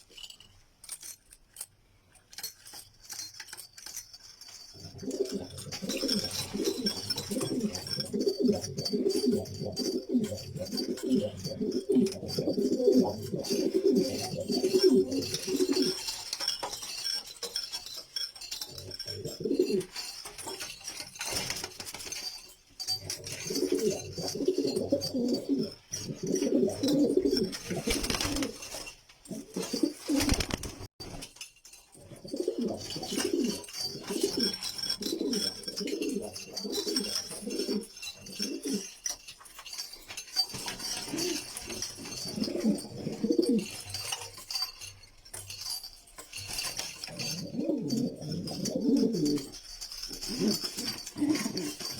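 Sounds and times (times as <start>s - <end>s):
pigeons cooing: 4.8s - 16.1s, 18.7s - 20.0s, 23.0s - 28.6s, 32.0s - 39.0s, 40.6s - 43.9s, 47.1s - 51.9s.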